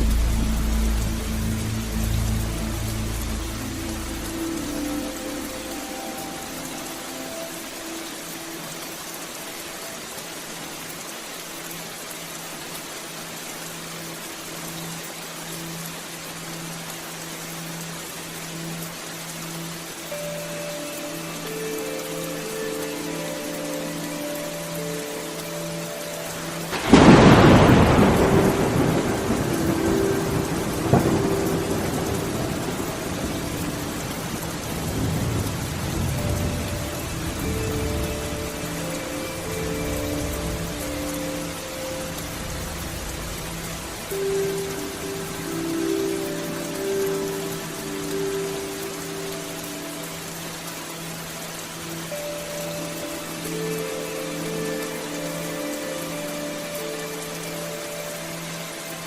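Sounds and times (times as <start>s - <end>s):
rain falling: 0.0s - 59.0s
thunder clap and rumble: 26.7s - 36.6s.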